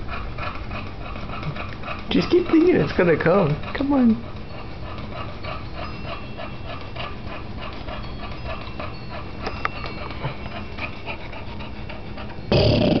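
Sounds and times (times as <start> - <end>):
dog panting rapidly: 0.0 - 12.5.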